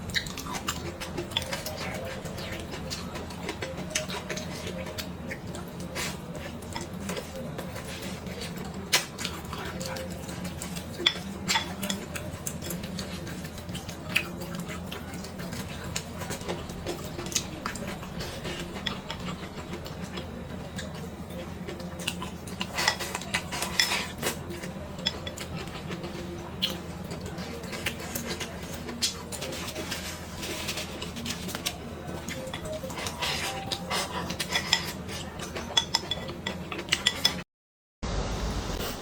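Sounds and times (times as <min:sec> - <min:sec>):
utensils clicking on dishes: 0:21.7 - 0:37.4.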